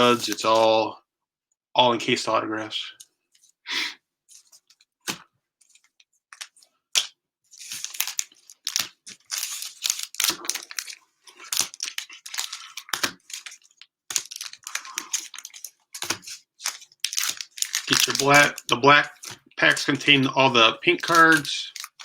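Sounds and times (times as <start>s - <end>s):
cellophane crinkling and tearing: 7.6s - 22.0s.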